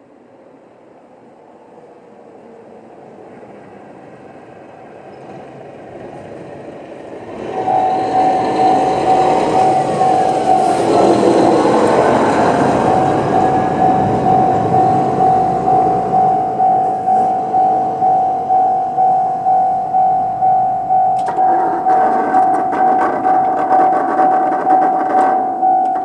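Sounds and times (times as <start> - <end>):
railcar engine and wheels: 0.0 - 26.0
level crossing warning bell: 7.3 - 26.0.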